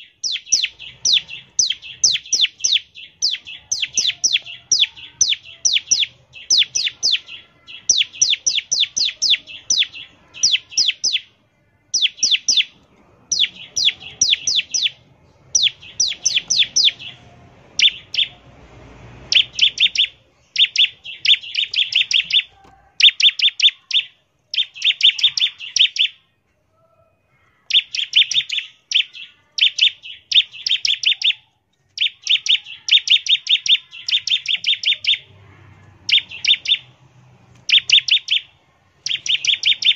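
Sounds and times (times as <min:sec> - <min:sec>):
bird singing rattling chipping notes: 0:11.9 - 0:17.2, 0:19.3 - 0:26.1.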